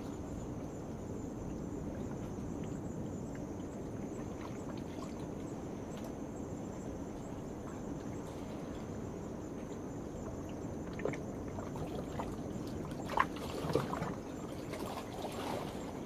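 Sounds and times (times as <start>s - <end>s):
night insects humming: 0.0s - 16.0s
small water splashes: 10.8s - 16.0s
small waves lapping on rocks: 10.9s - 16.0s.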